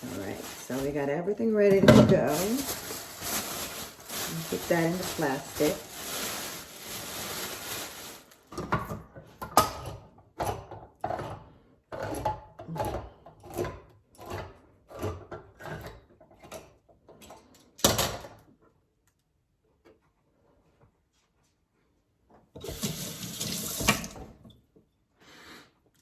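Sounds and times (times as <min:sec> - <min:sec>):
plastic wrap rustling: 0:00.0 - 0:09.0.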